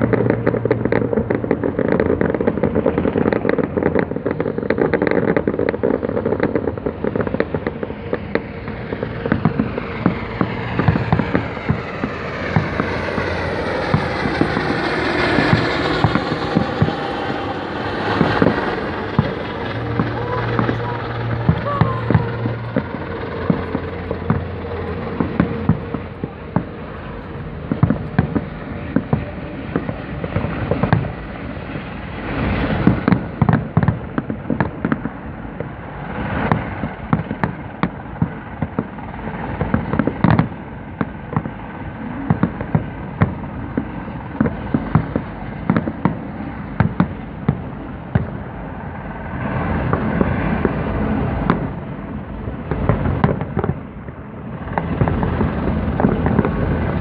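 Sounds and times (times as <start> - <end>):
fireworks bursting and crackling: 0.0 - 57.0.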